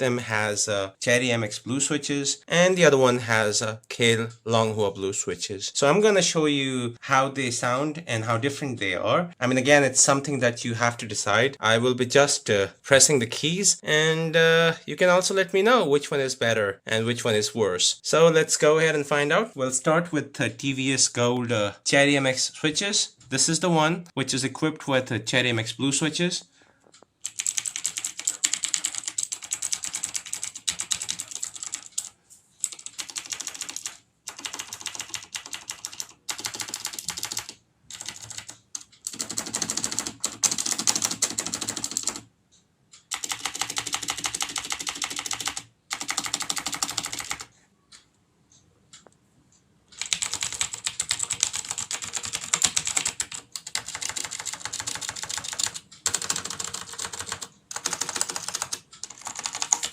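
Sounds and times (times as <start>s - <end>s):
mechanical keyboard typing: 27.2s - 42.3s, 43.0s - 47.5s, 50.0s - 59.9s.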